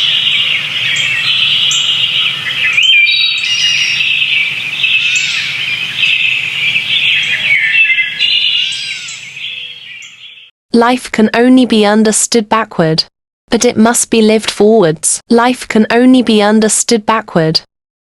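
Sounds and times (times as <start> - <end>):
birds chirping and singing: 0.0 - 10.5.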